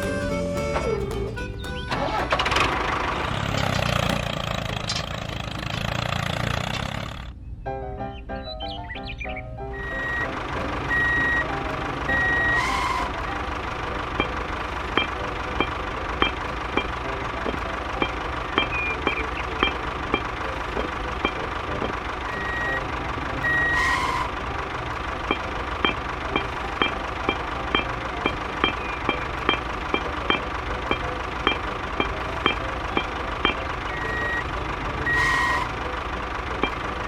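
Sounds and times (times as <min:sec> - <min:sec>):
construction machine whine: 0:00.0 - 0:07.4, 0:09.7 - 0:37.0
reversing alarm beeping: 0:09.7 - 0:37.0
clicking with high pips: 0:12.1 - 0:24.4, 0:25.1 - 0:35.9, 0:36.6 - 0:37.0.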